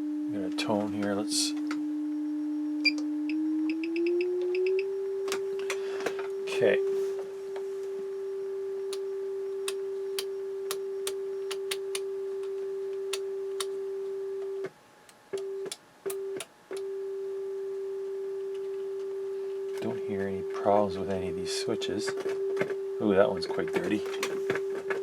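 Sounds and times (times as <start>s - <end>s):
steady test tone: 0.0s - 14.7s, 15.4s - 25.0s
amplifier switch clicks: 8.9s - 12.0s, 13.1s - 13.7s.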